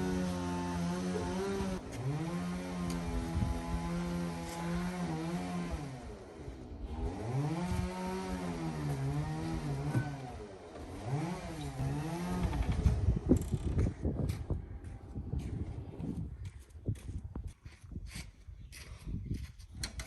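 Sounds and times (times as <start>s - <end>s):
small tractor engine tilling: 0.0s - 13.8s.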